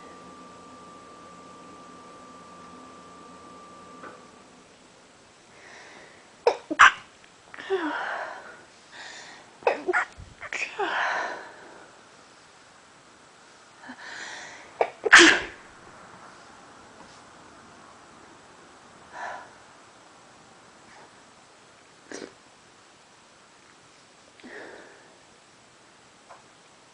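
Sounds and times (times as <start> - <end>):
person sneezing: 14.8 - 15.6
soft breaths: 24.4 - 25.3.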